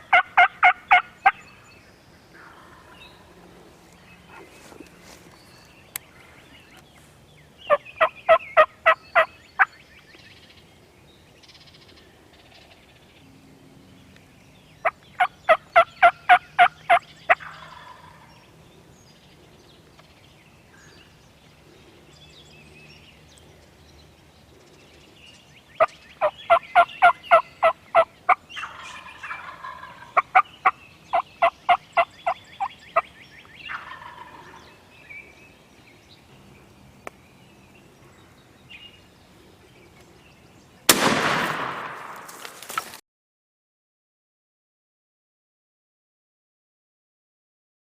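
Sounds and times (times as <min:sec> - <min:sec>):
turkey yelping: 0:00.1 - 0:01.4, 0:07.7 - 0:09.3, 0:15.2 - 0:18.2, 0:26.2 - 0:32.7, 0:33.7 - 0:34.6.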